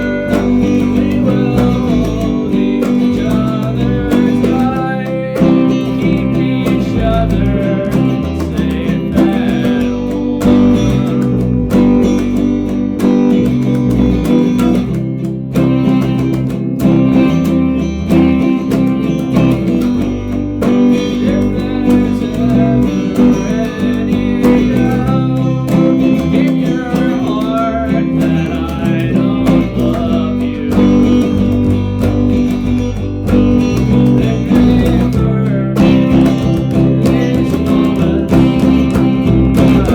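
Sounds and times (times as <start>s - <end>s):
bass guitar: 0.0s - 39.9s
strummed and picked guitars: 0.0s - 39.9s.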